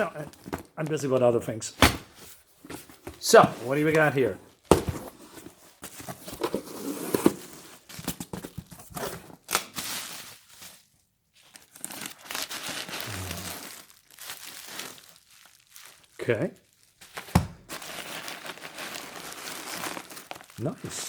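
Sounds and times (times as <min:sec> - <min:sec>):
packing material rustling: 0:02.0 - 0:21.0
packing tape tearing: 0:11.6 - 0:16.0, 0:17.0 - 0:20.6.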